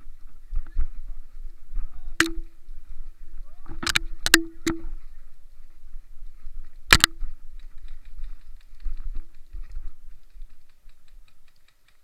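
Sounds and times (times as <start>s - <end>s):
small clicks and ticks: 6.6s - 12.0s.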